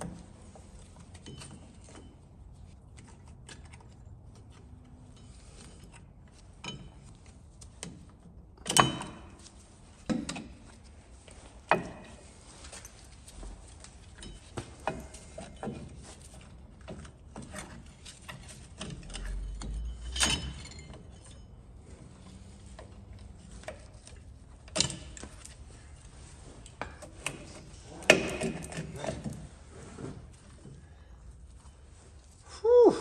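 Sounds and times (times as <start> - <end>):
metal tool clicks and clinks: 18.8 - 21.4.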